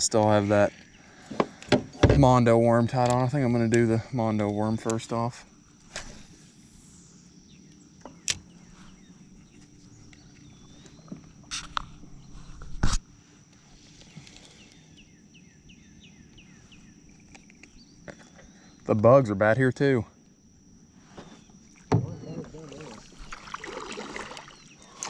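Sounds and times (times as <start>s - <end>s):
high insect buzz: 0.2s - 25.0s
bird chirps: 14.5s - 18.8s.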